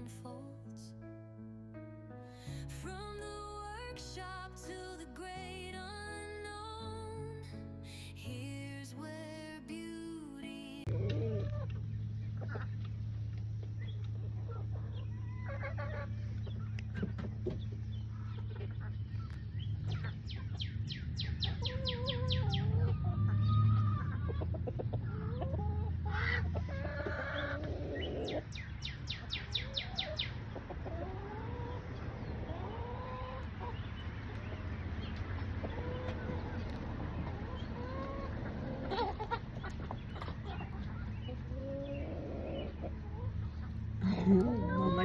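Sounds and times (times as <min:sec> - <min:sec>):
steady low hum: 0:10.7 - 0:23.2
birds calling: 0:11.1 - 0:45.0.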